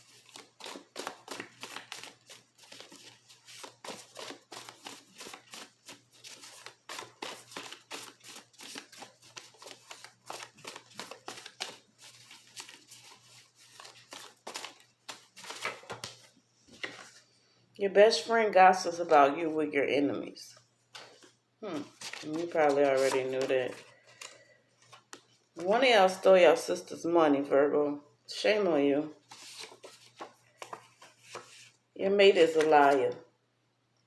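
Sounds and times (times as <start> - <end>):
cards being shuffled: 0.0 - 17.2, 20.9 - 25.3, 29.3 - 33.2.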